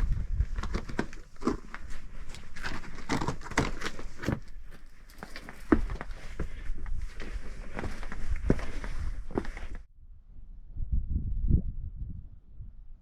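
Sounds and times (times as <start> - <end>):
footsteps crunching on trail: 0.0 - 9.9.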